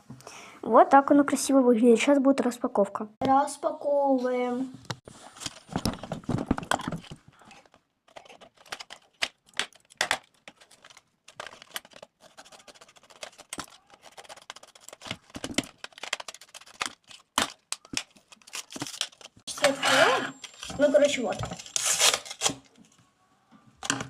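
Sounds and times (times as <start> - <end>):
wrapping paper rustling: 5.1 - 19.5, 20.4 - 22.9.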